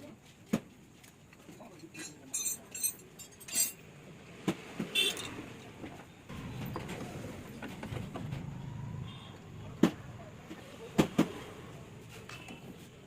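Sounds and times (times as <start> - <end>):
metal parts clinking: 1.7 - 3.8.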